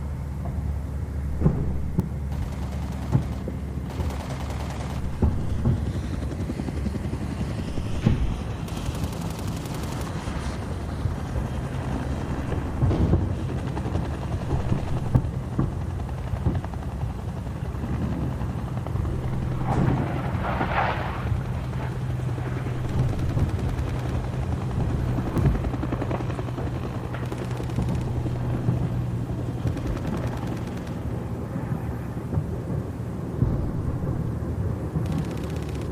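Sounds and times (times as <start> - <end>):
low engine drone: 0.0 - 35.9
machine-gun fire: 1.3 - 5.8
gunshots: 1.3 - 5.9
rushing burst: 7.4 - 10.8.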